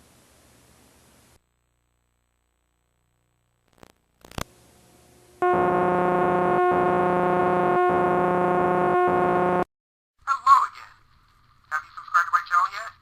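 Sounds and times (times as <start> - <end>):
loud steady electronic tone: 5.4 - 9.7.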